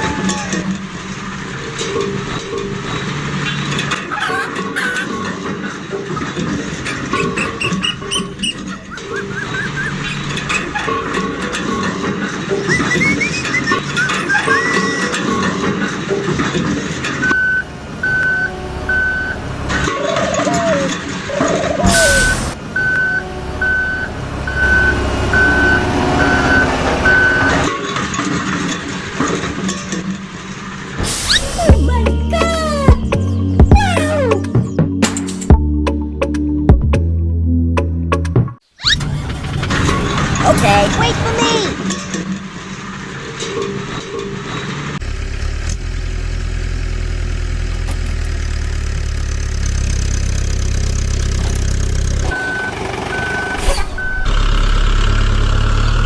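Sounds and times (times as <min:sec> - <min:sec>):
low engine rumble: 0:16.8 - 0:27.8, 0:39.0 - 0:56.0
vehicle reversing beeper: 0:17.2 - 0:20.0, 0:21.8 - 0:27.7, 0:51.5 - 0:56.0.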